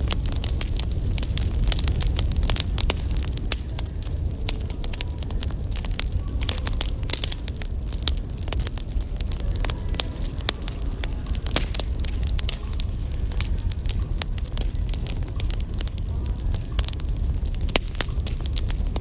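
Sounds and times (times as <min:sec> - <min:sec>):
low steady rumble: 0:00.0 - 0:19.0
wood fire crackling: 0:00.0 - 0:19.0.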